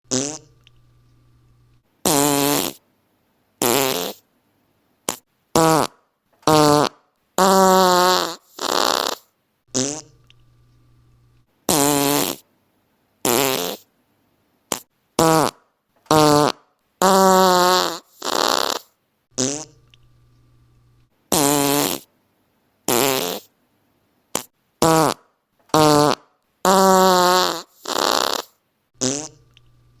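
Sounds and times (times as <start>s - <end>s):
fart sounds: 0.1s - 0.7s, 2.0s - 2.8s, 3.6s - 4.3s, 5.1s - 10.3s, 11.7s - 12.4s, 13.2s - 13.9s, 14.7s - 19.9s, 21.3s - 22.1s, 22.9s - 23.5s, 24.3s - 29.6s.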